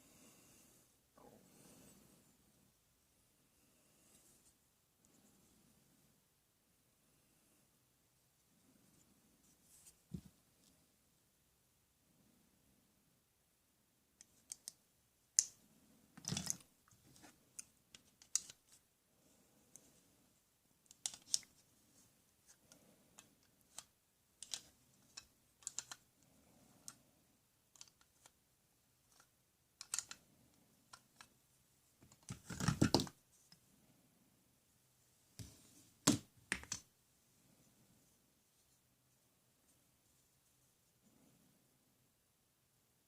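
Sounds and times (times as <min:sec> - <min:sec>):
plastic toy pieces clattering: 0:16.2 - 0:16.6
plastic toy pieces clicking: 0:16.2 - 0:16.6, 0:17.6 - 0:18.6, 0:20.9 - 0:21.5, 0:23.2 - 0:26.1, 0:27.7 - 0:28.3, 0:29.1 - 0:30.2.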